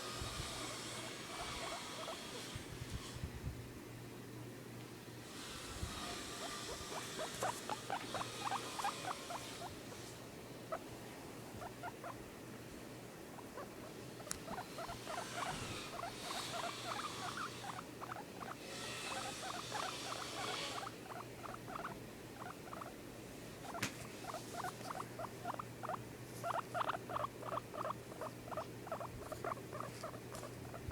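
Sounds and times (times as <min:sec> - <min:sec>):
guinea pig squeaking: 0:00.5 - 0:02.6, 0:05.4 - 0:09.9, 0:11.4 - 0:12.2, 0:13.4 - 0:23.0, 0:23.6 - 0:30.9
rustling hiss: 0:05.2 - 0:30.9.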